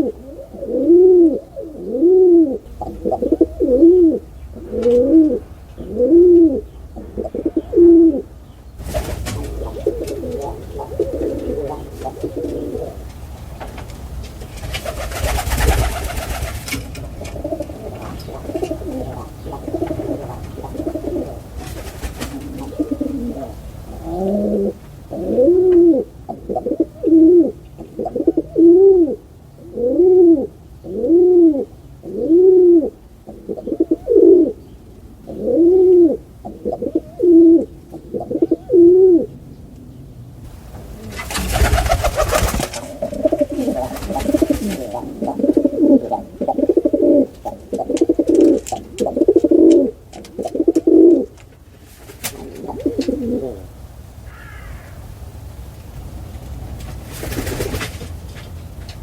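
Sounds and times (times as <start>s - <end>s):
pigeons cooing: 0.0s - 13.8s, 14.4s - 40.0s, 40.8s - 51.5s, 52.2s - 55.0s.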